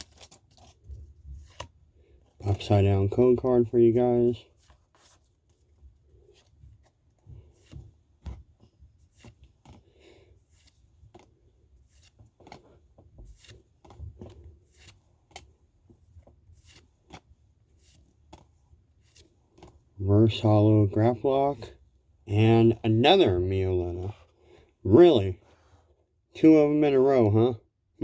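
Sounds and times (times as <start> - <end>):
trading cards rustling and clicking: 0.0 - 20.4.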